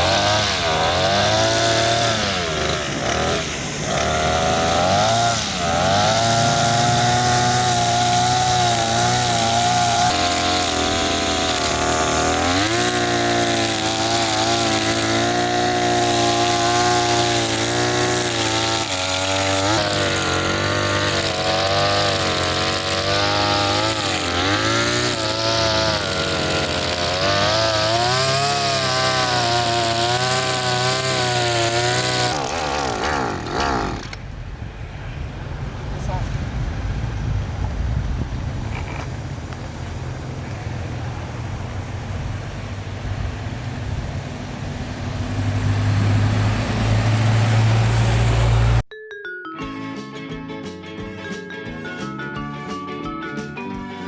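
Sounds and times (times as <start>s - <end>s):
brush-cutter engine at high revs: 0.0s - 34.2s, 40.2s - 48.9s.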